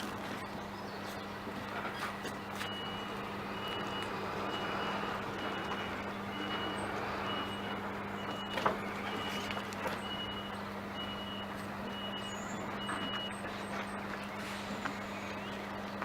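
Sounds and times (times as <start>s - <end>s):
vehicle reversing alarm beeping: 0.0s - 16.0s.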